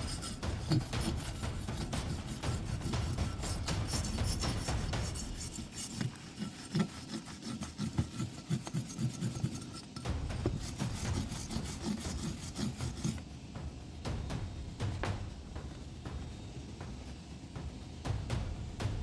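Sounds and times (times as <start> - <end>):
rasping scraping of metal parts: 0.0 - 13.2.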